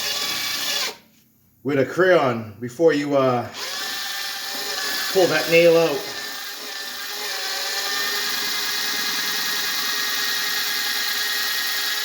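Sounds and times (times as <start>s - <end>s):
power drill whining: 0.0s - 1.0s, 3.5s - 12.0s.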